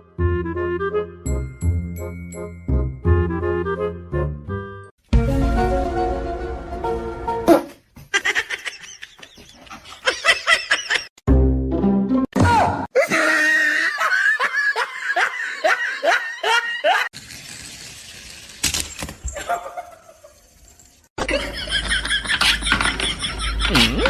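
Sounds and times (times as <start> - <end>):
laughter: 8.1 - 11.2, 13.1 - 17.1, 19.4 - 20.4, 21.2 - 24.0.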